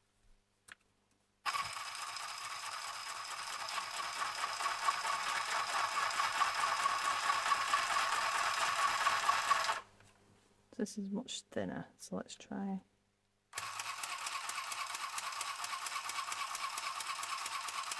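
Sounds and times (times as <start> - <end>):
sewing machine stitching: 1.5 - 9.9, 13.6 - 17.9.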